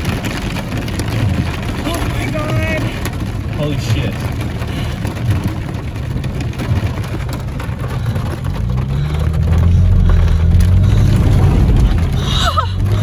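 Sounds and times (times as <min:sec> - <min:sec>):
tyre spray and rain on car: 0:00.0 - 0:13.0
engine drone rising in pitch: 0:08.2 - 0:13.0.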